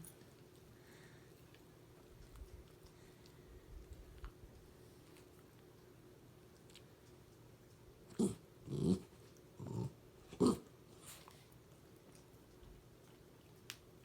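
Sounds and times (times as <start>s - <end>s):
dog growling: 8.1s - 11.2s.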